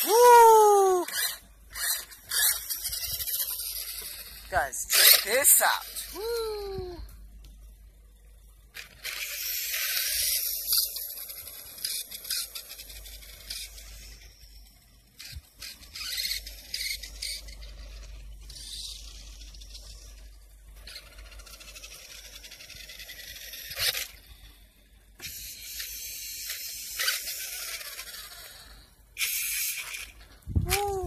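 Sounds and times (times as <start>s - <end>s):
toy car electric motor whirring: 0.0s - 7.1s, 8.7s - 31.0s
wheels hissing on floor: 25.2s - 30.2s.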